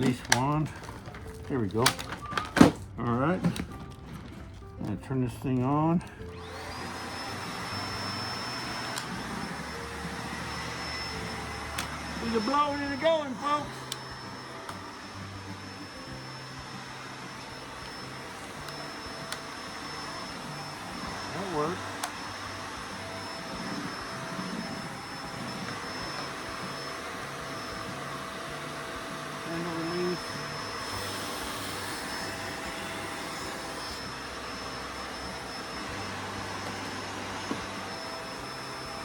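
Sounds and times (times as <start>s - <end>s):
vacuum cleaner motor whining: 0.0s - 39.0s
vacuum cleaner clicks: 6.3s - 9.3s, 10.8s - 12.2s, 13.8s - 15.0s, 17.2s - 21.3s, 21.9s - 24.6s.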